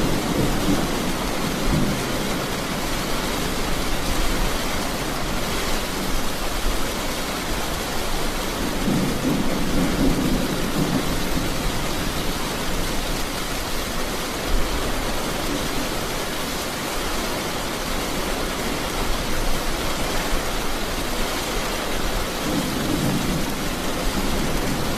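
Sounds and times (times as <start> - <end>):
low thunder rolls: 0.0 - 2.8, 8.6 - 12.9
steady rain: 0.0 - 24.9.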